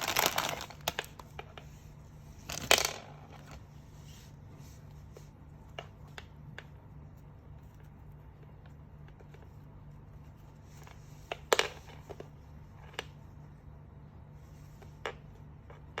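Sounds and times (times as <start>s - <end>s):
packaging clatter: 0.0s - 1.0s
steady low hum: 0.0s - 16.0s.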